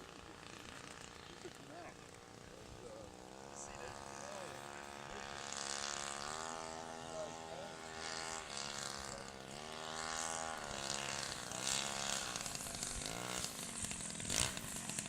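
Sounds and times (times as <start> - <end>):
model plane engine buzzing: 0.0 - 15.0.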